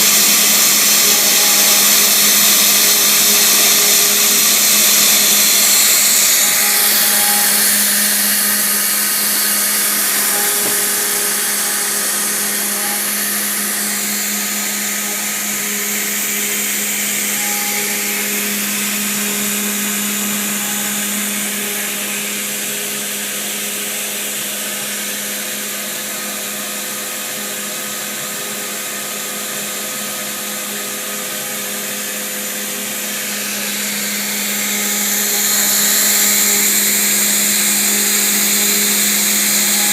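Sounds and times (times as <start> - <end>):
short high machine tones: 0.0 - 22.2
bright cutting hiss: 0.0 - 22.6, 32.4 - 39.9
router motor hum: 0.0 - 39.9.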